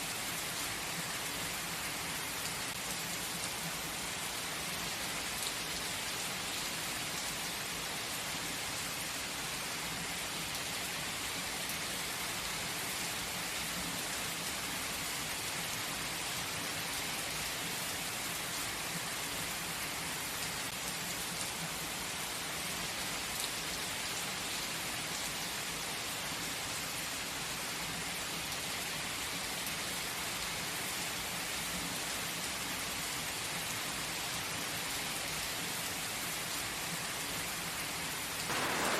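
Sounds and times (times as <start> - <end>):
gentle rain falling: 0.0 - 38.9.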